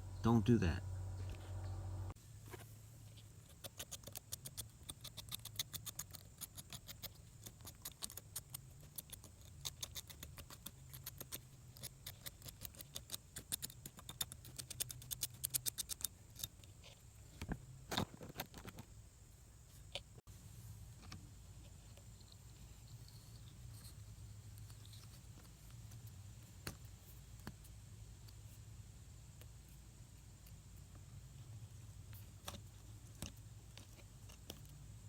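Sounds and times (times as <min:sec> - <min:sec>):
loud ticks: 0:03.4 - 0:16.7.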